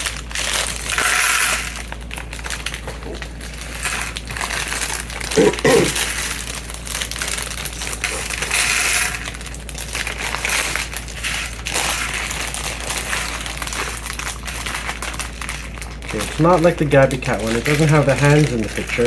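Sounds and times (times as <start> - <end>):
plastic pieces clattering: 0.0 - 19.0.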